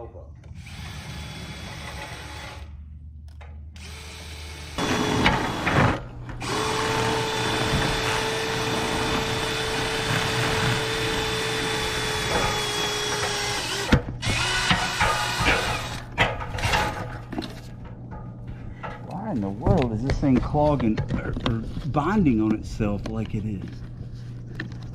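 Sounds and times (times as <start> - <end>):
power drill spinning brush: 3.8 - 16.0.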